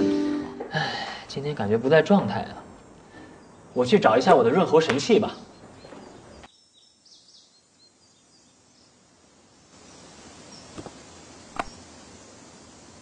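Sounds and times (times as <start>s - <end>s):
steady faint hiss: 0.0s - 13.0s
faint bird chirps: 3.1s - 9.0s.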